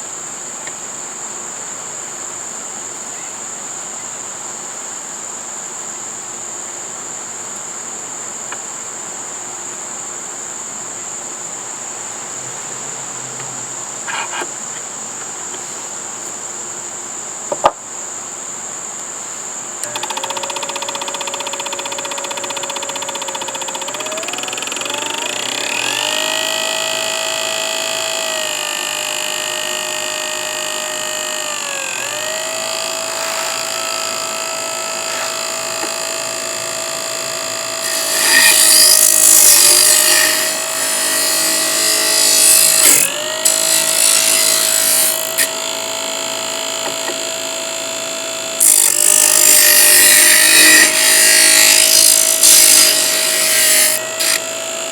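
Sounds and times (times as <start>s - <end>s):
disc sander motor whine: 19.8s - 54.9s
wood rasping on sanding disc: 19.8s - 54.9s.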